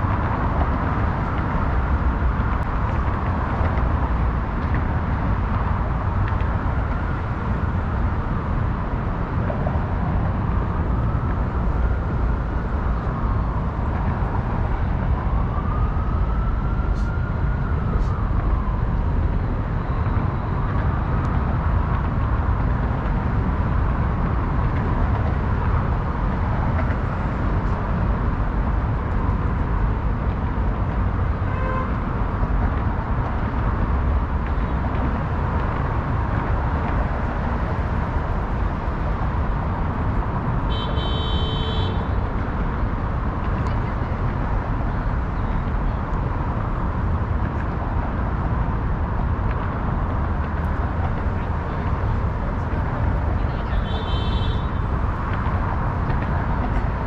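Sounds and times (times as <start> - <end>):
passing cars: 0.0 - 57.0
car horn toot: 31.5 - 31.9, 40.7 - 42.1, 53.9 - 54.8.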